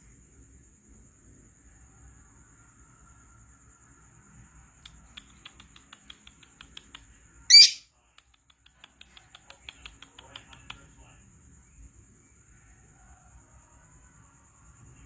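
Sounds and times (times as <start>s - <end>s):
bird chirping: 7.5s - 7.8s
bird shrill squawk: 7.5s - 7.8s.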